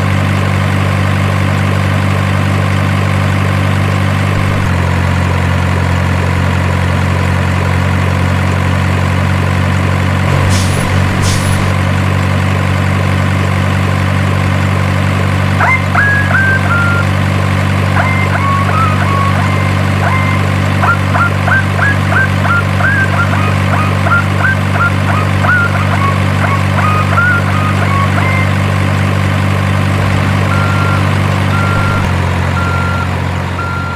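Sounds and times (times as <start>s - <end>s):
diesel engine idling: 0.0s - 33.9s
air brake hisses: 10.3s - 11.7s
reversing beeps: 15.6s - 17.2s, 18.0s - 28.6s, 30.4s - 33.9s.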